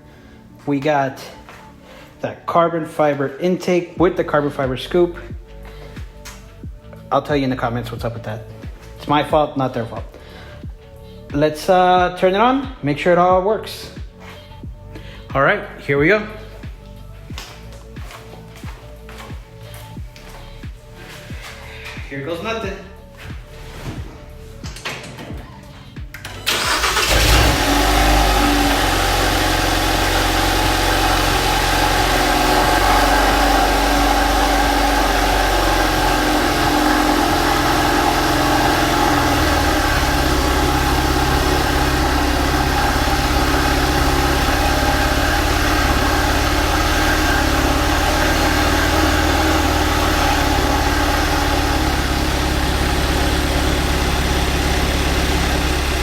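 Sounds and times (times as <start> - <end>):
car engine starting and idling: 26.1 - 56.0.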